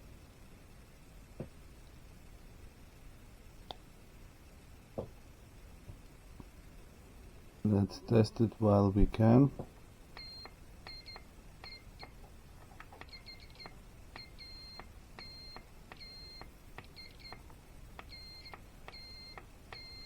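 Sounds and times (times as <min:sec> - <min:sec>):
multimeter high beep: 0:10.2 - 0:12.1, 0:13.1 - 0:17.4, 0:18.1 - 0:20.0.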